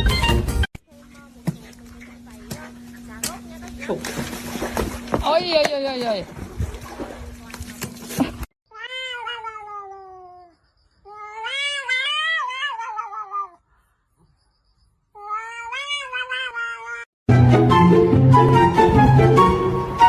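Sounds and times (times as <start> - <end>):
cat yowling: 8.7 - 13.6, 15.2 - 17.1.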